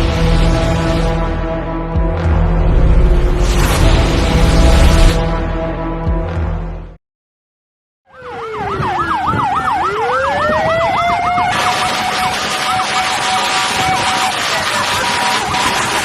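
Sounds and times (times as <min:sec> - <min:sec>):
loud rushing noise: 0:02.3 - 0:05.6
siren wail: 0:08.1 - 0:16.0
siren yelp: 0:08.1 - 0:16.0.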